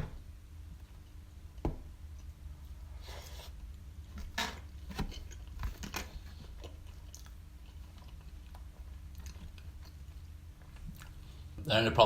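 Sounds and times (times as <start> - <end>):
close-miked chewing: 5.1 - 11.6.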